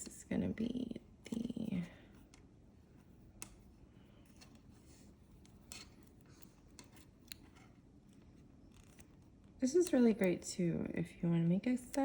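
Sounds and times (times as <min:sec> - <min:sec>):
wire clicking: 0:03.3 - 0:03.7.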